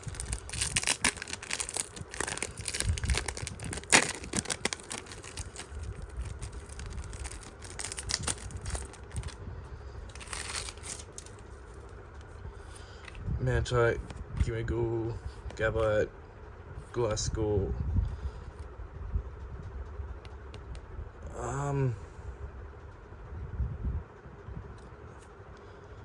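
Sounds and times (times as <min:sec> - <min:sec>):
foil wrapper crinkling and tearing: 0:00.0 - 0:09.4, 0:10.1 - 0:11.4
rustling of cards: 0:00.0 - 0:09.4, 0:10.1 - 0:12.0.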